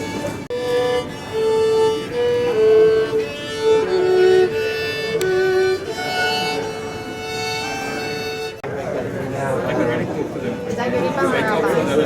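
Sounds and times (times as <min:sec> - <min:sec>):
violin slow melody: 0:00.0 - 0:08.7.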